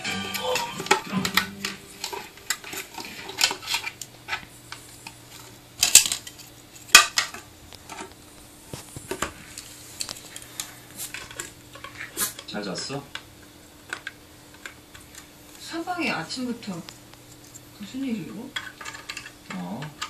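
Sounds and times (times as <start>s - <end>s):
hard objects clicking and clattering: 0.0s - 8.2s, 18.5s - 20.0s.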